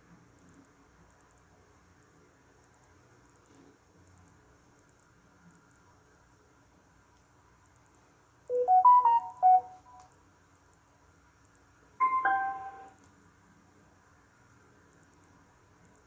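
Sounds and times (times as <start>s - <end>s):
electronic chime: 8.5s - 10.0s, 12.0s - 12.9s
short stepped beeps: 8.5s - 10.0s, 12.0s - 12.9s.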